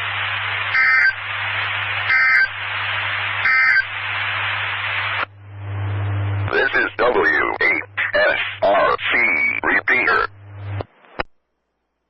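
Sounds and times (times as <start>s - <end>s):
radio hiss: 0.0s - 11.3s
two-tone digital data bursts: 2.1s - 2.6s, 3.4s - 3.9s
low hum: 4.0s - 6.9s, 7.6s - 10.8s.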